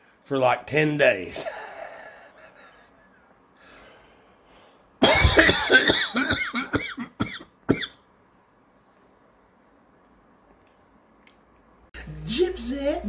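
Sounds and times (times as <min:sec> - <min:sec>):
man coughing hard: 0:05.0 - 0:08.0.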